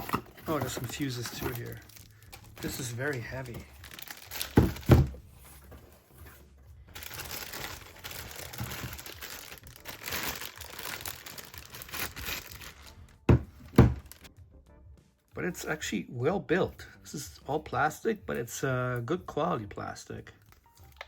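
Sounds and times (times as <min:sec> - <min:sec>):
plastic packaging crinkling: 0:00.0 - 0:05.2, 0:06.9 - 0:14.3.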